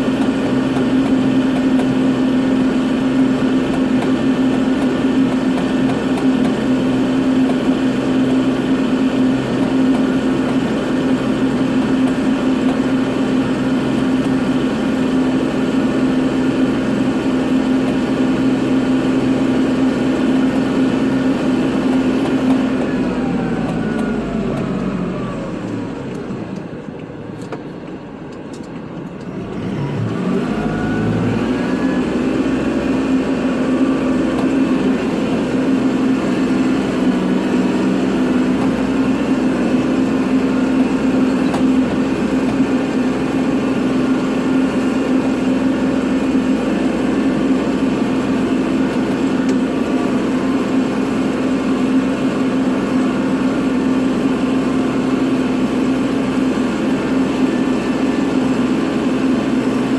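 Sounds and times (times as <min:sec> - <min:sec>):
tractor diesel engine revving: 0:00.0 - 0:28.3, 0:29.2 - 0:59.9.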